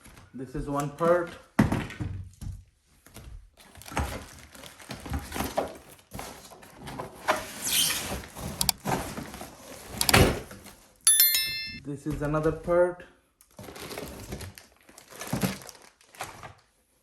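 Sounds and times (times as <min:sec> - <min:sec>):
packaging rustling and scraping: 0:13.6 - 0:16.6.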